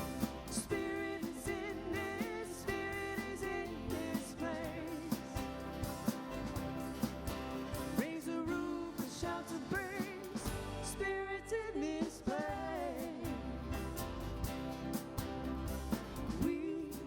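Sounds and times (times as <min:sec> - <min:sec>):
person singing with vibrato: 0:00.0 - 0:05.7, 0:07.9 - 0:14.0, 0:16.3 - 0:17.0
band with drums and bass: 0:00.0 - 0:17.0.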